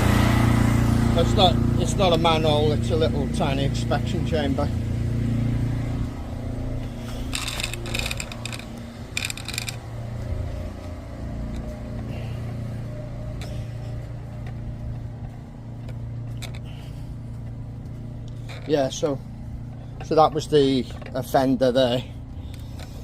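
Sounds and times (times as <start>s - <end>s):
low engine hum: 0.0s - 23.0s
clattering and clicks: 7.2s - 9.9s.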